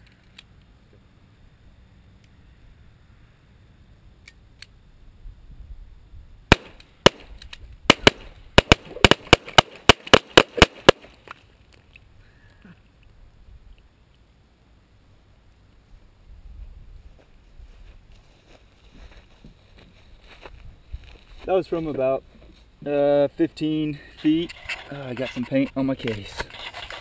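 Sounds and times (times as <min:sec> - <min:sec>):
pistol shots: 0:06.5 - 0:11.1.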